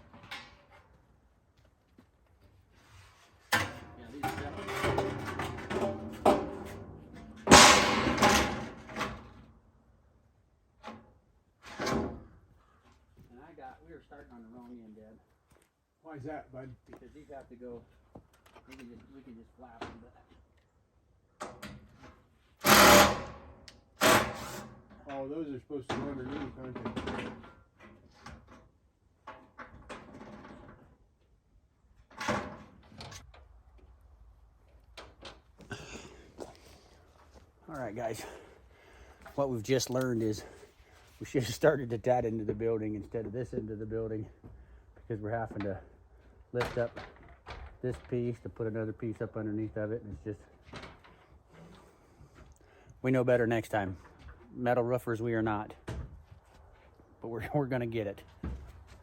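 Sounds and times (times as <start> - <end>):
metal roofing sheet scraping: 2.8 - 9.3, 22.6 - 23.3.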